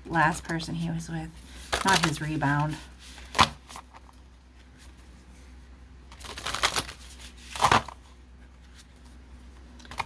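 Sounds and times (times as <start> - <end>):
cards slapping: 6.1 - 8.0.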